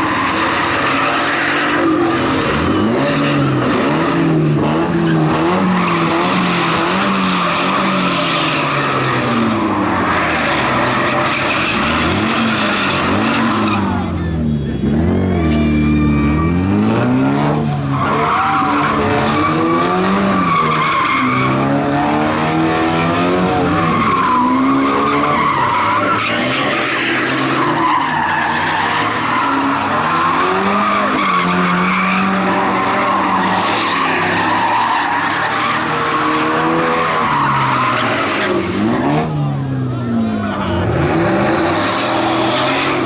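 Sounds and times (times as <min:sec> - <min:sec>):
tyres screeching: 0:00.0 - 0:39.7
engine revving: 0:00.0 - 0:43.0.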